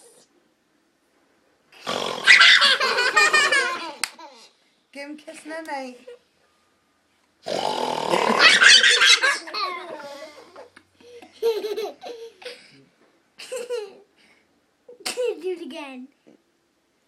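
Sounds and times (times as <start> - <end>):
young child laughing: 2.2 - 4.5, 8.3 - 12.7, 13.4 - 14.1.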